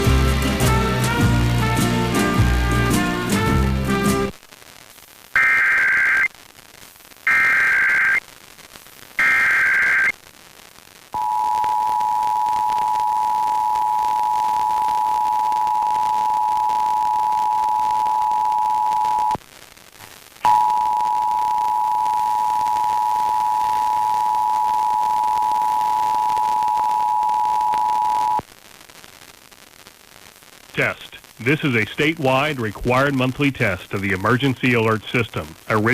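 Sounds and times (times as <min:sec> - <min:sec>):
screeching data bursts: 0:05.4 - 0:06.4, 0:07.2 - 0:08.2, 0:09.2 - 0:10.2, 0:11.2 - 0:19.4, 0:20.4 - 0:28.4.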